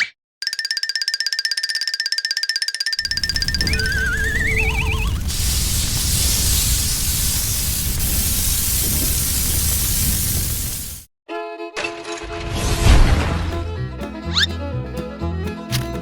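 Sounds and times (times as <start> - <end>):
wobbling whistle rising in pitch: 1.6 - 5.3
low rumble: 3.0 - 10.8, 12.3 - 13.8
loud hiss: 3.1 - 11.1.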